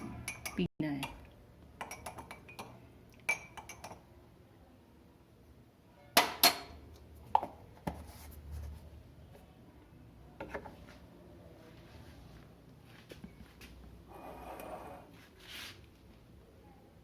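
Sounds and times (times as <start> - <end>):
spoon clinking against a cup: 0.0 - 4.0.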